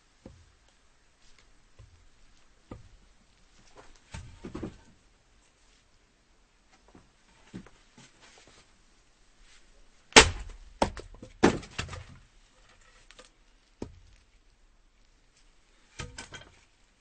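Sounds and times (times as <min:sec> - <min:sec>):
axe chopping firewood: 0:10.1 - 0:12.2, 0:16.0 - 0:16.4.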